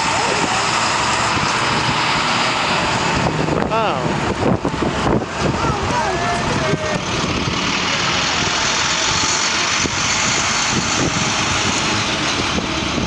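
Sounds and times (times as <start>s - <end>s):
bus engine and road noise: 0.0s - 13.0s
wind buffeting microphone: 0.0s - 13.0s.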